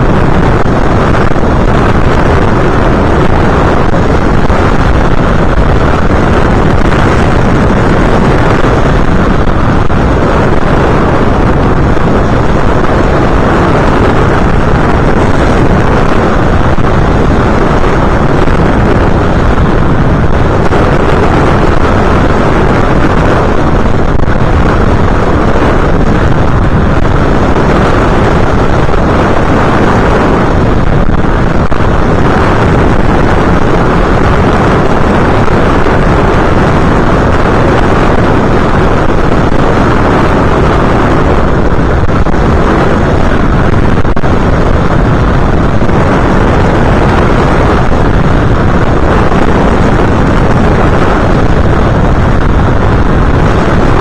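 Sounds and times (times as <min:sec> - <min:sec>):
wind buffeting microphone: 0:00.0 - 0:54.0.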